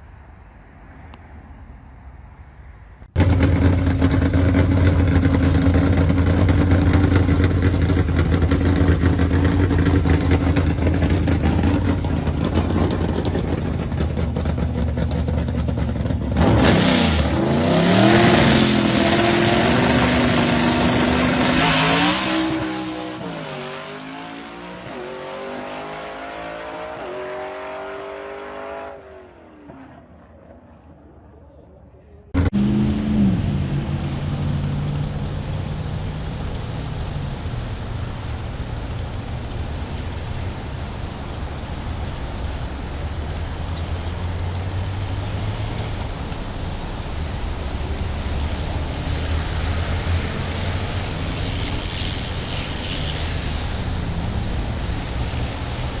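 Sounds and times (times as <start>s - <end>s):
hot rod engine idling: 3.2s - 16.4s
engine revving and gear changes: 3.2s - 30.2s, 32.4s - 40.4s, 41.4s - 56.0s.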